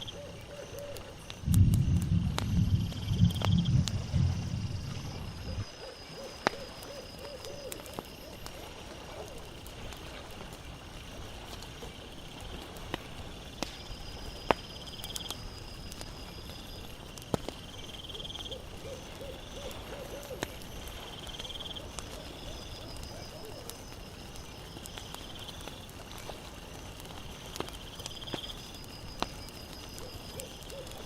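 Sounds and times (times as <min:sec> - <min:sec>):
insect trills: 0:00.0 - 0:31.0
wood fire crackling: 0:00.0 - 0:31.0
low hooting calls: 0:02.8 - 0:09.6, 0:18.1 - 0:21.1, 0:21.8 - 0:23.9, 0:30.0 - 0:31.0.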